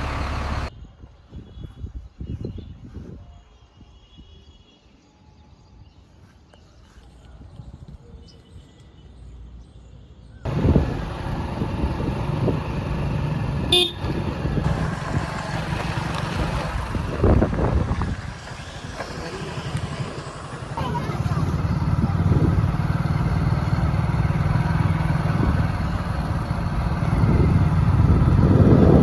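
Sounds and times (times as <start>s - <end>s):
heavy diesel machinery running: 0.0s - 0.7s, 10.5s - 29.0s
faint outdoor background: 0.0s - 29.0s
short horn toot: 13.7s - 14.2s.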